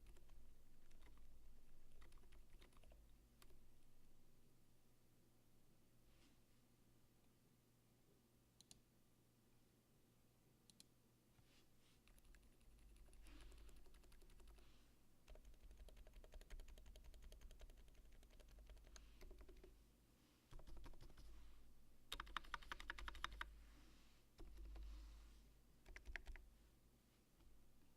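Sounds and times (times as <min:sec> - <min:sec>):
soft keyboard typing: 0:00.0 - 0:03.6, 0:08.6 - 0:08.8, 0:10.7 - 0:10.9, 0:12.0 - 0:14.7, 0:15.3 - 0:19.8, 0:20.5 - 0:21.5, 0:22.1 - 0:23.5, 0:24.4 - 0:25.0, 0:25.8 - 0:26.5.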